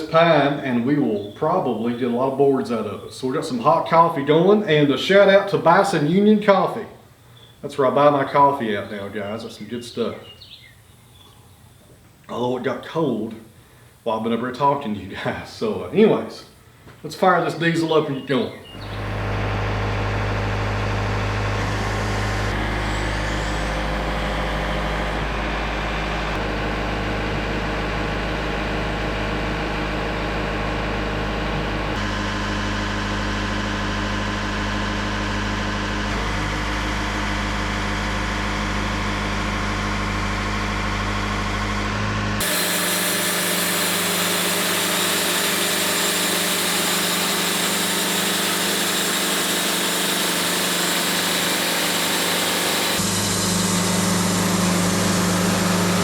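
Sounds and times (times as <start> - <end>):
diesel engine running: 18.8 - 56.0
hissy running sound: 42.4 - 56.0.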